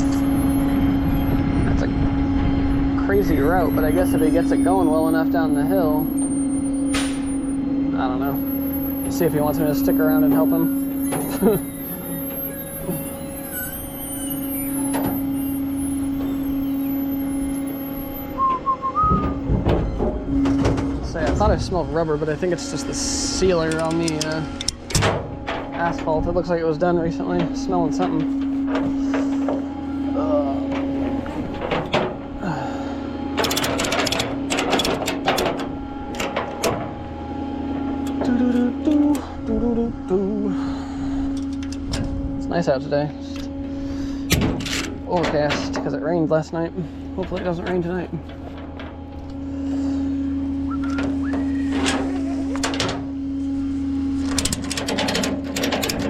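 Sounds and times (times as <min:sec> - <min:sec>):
tow truck engine humming: 0:00.0 - 0:56.0
metallic clicks and rattles: 0:23.5 - 0:26.1, 0:33.4 - 0:36.8, 0:54.2 - 0:56.0.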